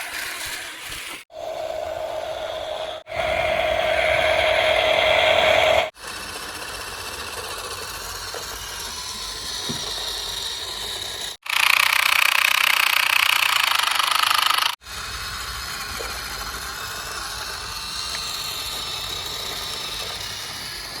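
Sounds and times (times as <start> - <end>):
motor running: 1.3 - 21.0.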